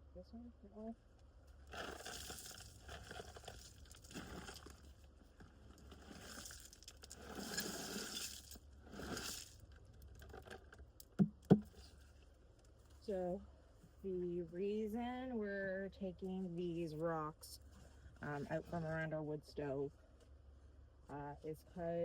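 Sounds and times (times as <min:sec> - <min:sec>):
rocks pouring onto gravel: 0:01.7 - 0:05.0, 0:05.8 - 0:09.6.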